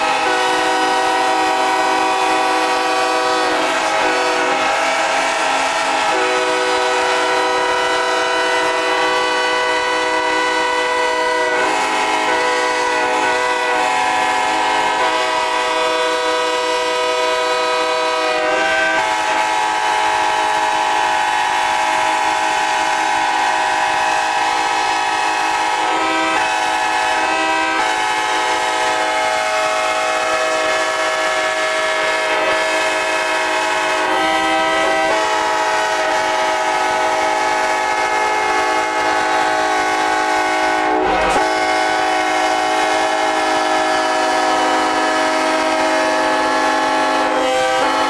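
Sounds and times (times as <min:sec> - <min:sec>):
locomotive air horns blowing: 0:00.0 - 0:48.0.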